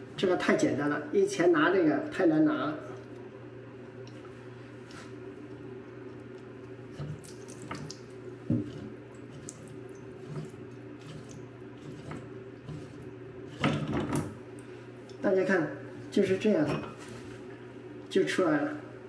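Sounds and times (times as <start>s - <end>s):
shower water trickling and dripping: 4.0s - 15.2s.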